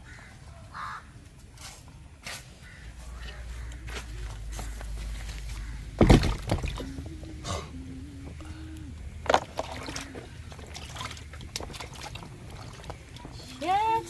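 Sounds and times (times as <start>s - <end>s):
water sloshing: 3.6s - 14.0s
loud knocks or splashes: 6.0s - 6.9s
person faintly humming: 6.8s - 9.2s.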